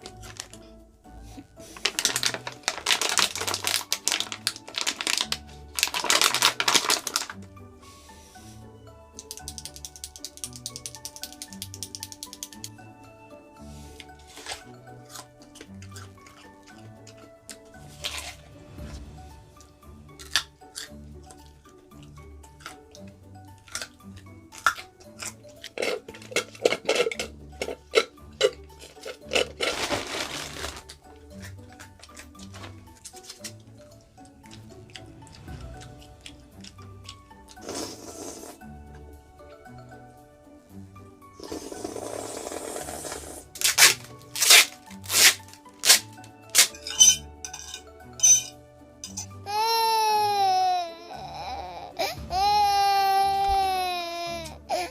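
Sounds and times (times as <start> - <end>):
soft background music: 0.0 - 54.9
fork clinking on a plate: 46.7 - 49.3.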